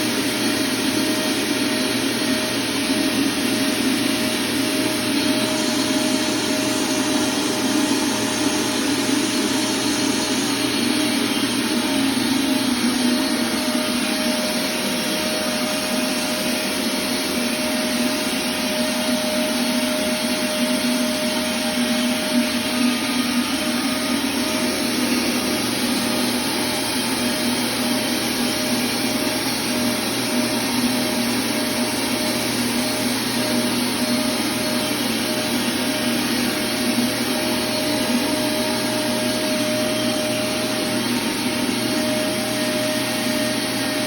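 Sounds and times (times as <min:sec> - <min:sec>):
hot-air welding gun blowing: 0:00.0 - 0:44.0.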